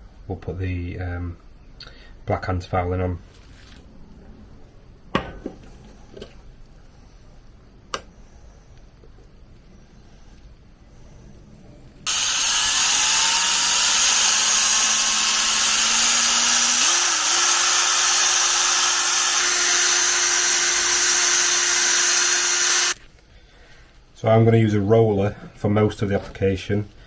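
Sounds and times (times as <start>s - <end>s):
power drill mixing paint: 12.1s - 23.0s.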